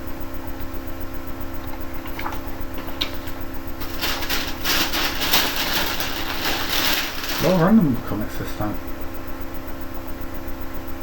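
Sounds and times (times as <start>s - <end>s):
low electrical hum: 0.0s - 11.0s
packaging crinkling rustle: 1.6s - 8.1s.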